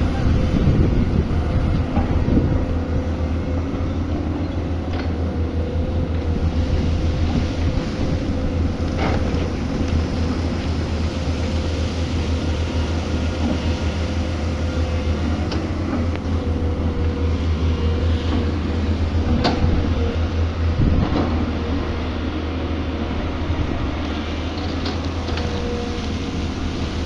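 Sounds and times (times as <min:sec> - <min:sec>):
excavator diesel engine running: 0:00.0 - 0:27.0.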